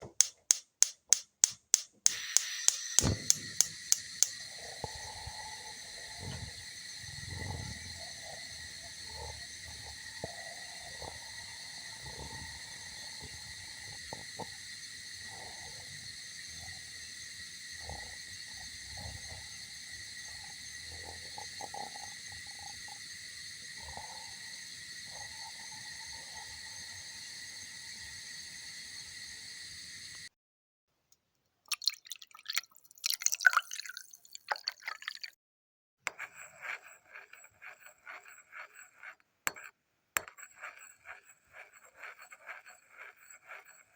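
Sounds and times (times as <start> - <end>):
coffee machine whining: 2.1 - 30.3
coffee machine gurgling: 2.2 - 30.3, 40.3 - 43.9.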